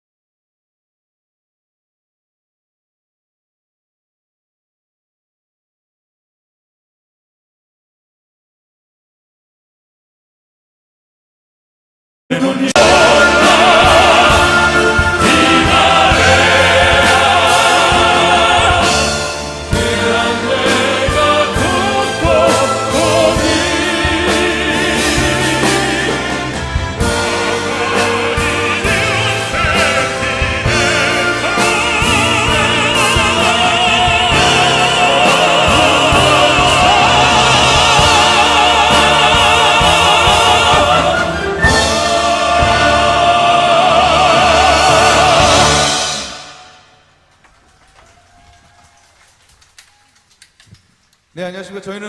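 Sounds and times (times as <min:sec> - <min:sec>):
male vocal quartet singing: 0:12.3 - 0:46.8
musical accompaniment: 0:12.3 - 0:47.4
instrumental backing: 0:12.8 - 0:46.5.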